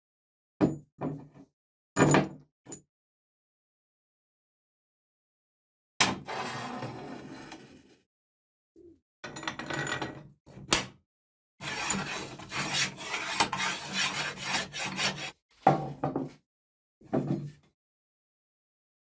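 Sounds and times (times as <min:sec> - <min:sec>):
rasping scraping noise: 0:11.6 - 0:15.4.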